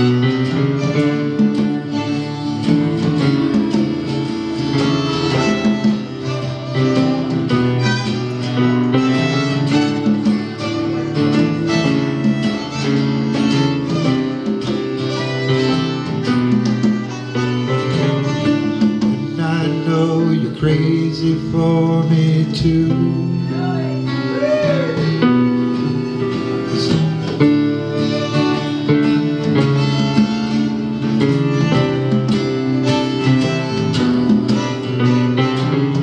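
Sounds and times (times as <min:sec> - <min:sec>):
guitar: 0:00.0 - 0:36.0
live country band playing: 0:00.0 - 0:36.0.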